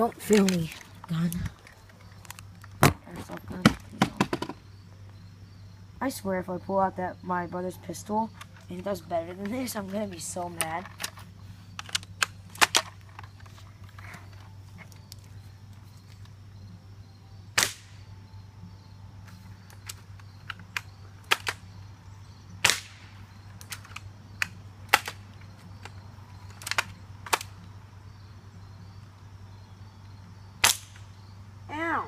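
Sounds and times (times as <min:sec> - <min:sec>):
airsoft rifle shots: 0:17.6 - 0:18.0, 0:22.6 - 0:23.2, 0:30.6 - 0:31.1.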